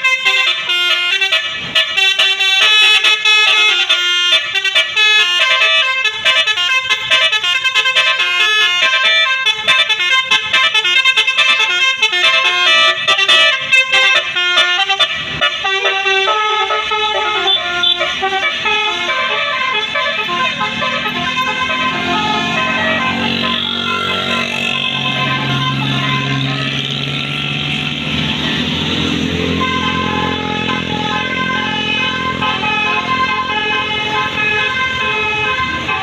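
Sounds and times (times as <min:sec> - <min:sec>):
bus musical horn melody: 0:00.0 - 0:36.0.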